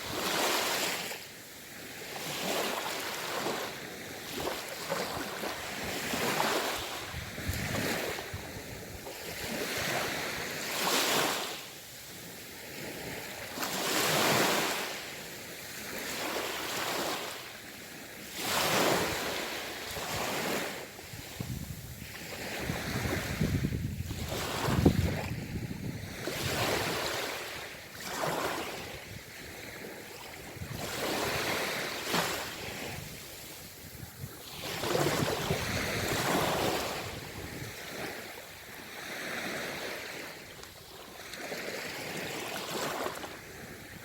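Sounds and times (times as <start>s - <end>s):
sea waves surging and washing: 0.0s - 44.0s
wind rumbling on microphone: 4.3s - 10.6s, 18.6s - 27.8s, 28.4s - 38.8s.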